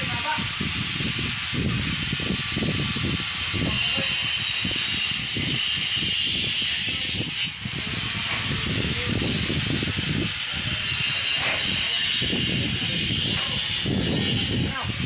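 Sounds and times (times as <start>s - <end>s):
wind buffeting microphone: 0.0s - 15.0s.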